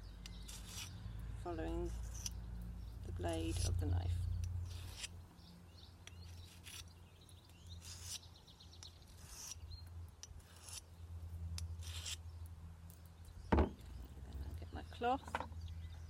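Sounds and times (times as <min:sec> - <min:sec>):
knife scraping on whetstone: 0:00.4 - 0:00.9, 0:03.3 - 0:03.8, 0:04.6 - 0:05.1, 0:06.2 - 0:06.9, 0:07.8 - 0:08.3, 0:09.1 - 0:09.6, 0:10.3 - 0:10.8, 0:11.7 - 0:12.2.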